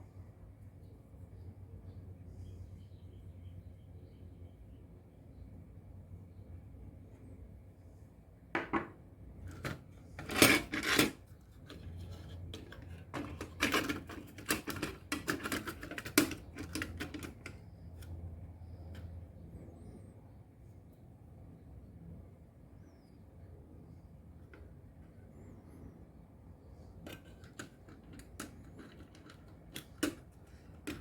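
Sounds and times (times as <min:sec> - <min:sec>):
small parts and tools clattering: 0:09.5 - 0:18.2, 0:27.0 - 0:31.0.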